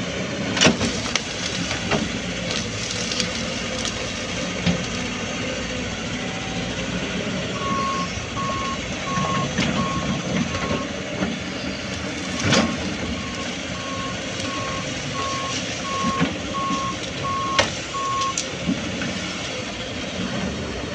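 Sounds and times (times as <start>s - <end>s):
excavator diesel engine running: 0.0s - 20.9s
travel alarm beeping: 7.5s - 18.4s.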